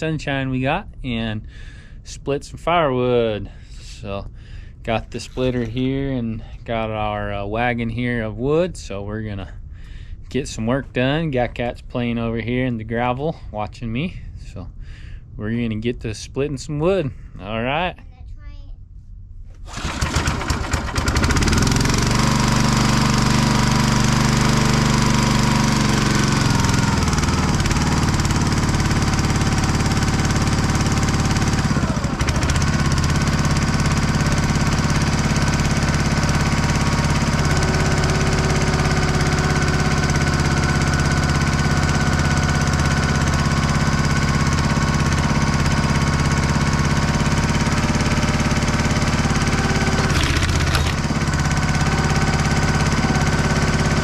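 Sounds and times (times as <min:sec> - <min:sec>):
log splitter engine running: 0:19.7 - 0:54.0.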